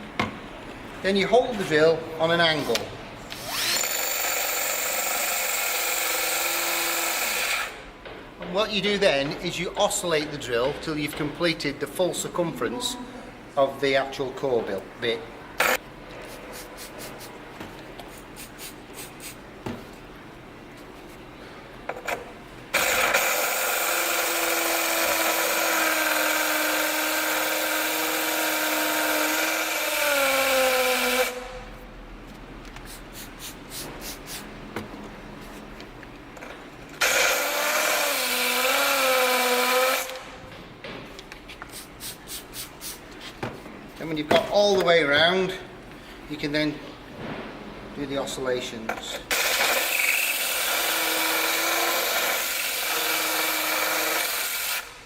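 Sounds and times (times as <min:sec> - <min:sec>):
drill coring into tile: 0:03.4 - 0:07.8, 0:22.8 - 0:31.6, 0:37.0 - 0:40.2, 0:49.3 - 0:55.0.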